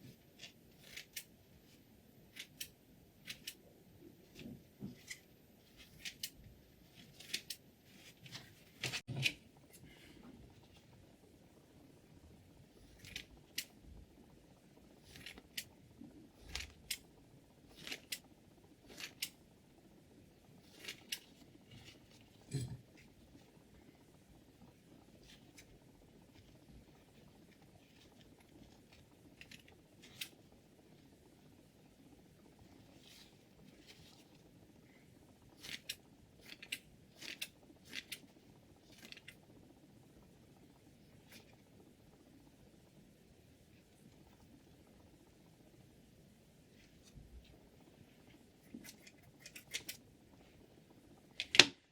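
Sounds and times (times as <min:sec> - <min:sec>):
scissors snipping: 0:02.3 - 0:03.6.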